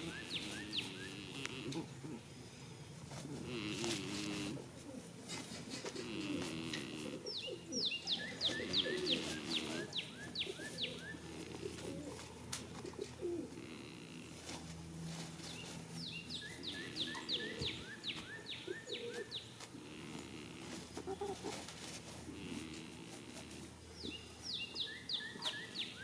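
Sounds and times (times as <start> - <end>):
songbird whistling: 24.6 - 26.0.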